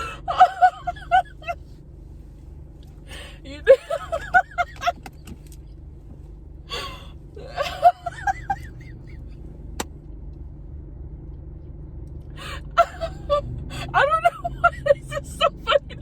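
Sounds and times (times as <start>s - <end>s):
woman laughing: 0.0s - 1.6s, 3.1s - 5.0s, 6.7s - 9.2s, 12.4s - 16.0s
car cabin hum: 0.0s - 16.0s.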